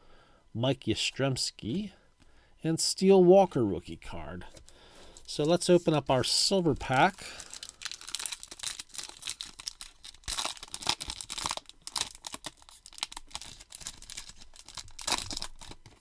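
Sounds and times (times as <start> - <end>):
foil wrapper tearing and crinkling: 4.6 - 16.0.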